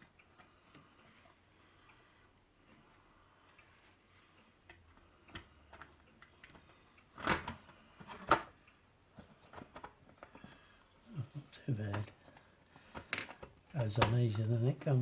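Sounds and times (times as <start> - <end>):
sharp plastic snaps: 4.7 - 8.6.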